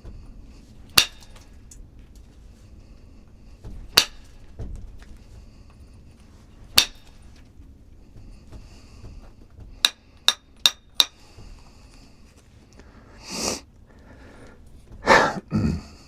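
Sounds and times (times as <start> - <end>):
ringing strikes on stone: 1.0 - 1.6, 3.7 - 4.5, 6.8 - 7.3, 9.8 - 11.2.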